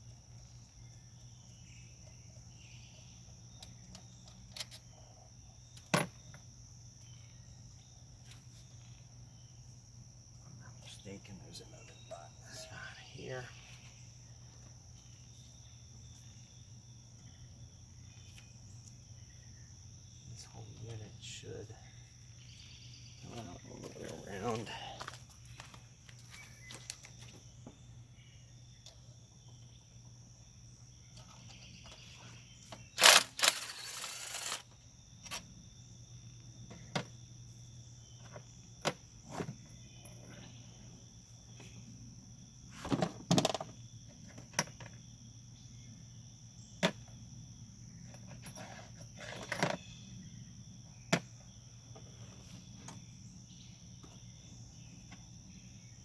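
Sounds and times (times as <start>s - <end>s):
steady background hum: 0.0s - 42.7s
metal parts clattering rattle: 33.0s - 34.6s
metal tools and parts clicking: 33.0s - 35.4s.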